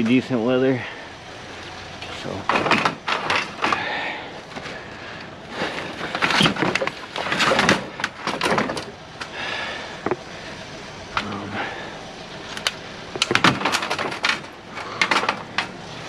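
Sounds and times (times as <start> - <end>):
scrap metal clanking and scraping: 2.0 - 9.0, 12.5 - 16.0.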